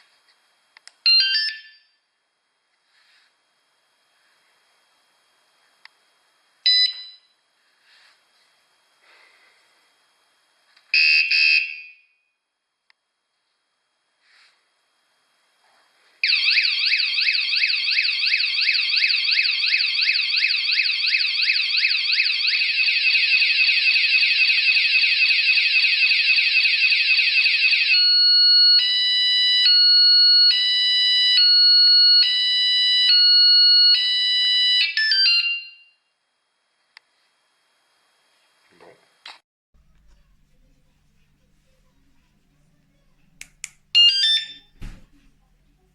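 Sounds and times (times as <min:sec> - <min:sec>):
bike alarm electronic siren: 0:11.0 - 0:12.1, 0:16.2 - 0:36.0, 0:44.0 - 0:44.8.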